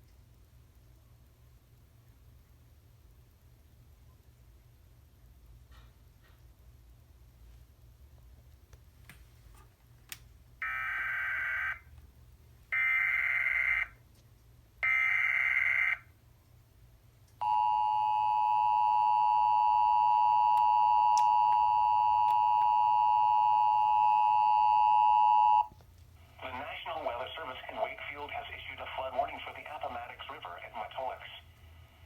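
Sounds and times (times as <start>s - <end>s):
two-tone alarm: 10.6s - 11.8s, 12.8s - 13.9s, 14.8s - 16.1s, 17.4s - 25.7s.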